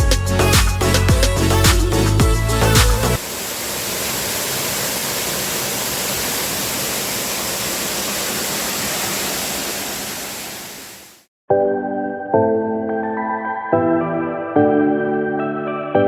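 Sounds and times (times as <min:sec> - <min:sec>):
waterfall rushing: 0:03.2 - 0:11.3.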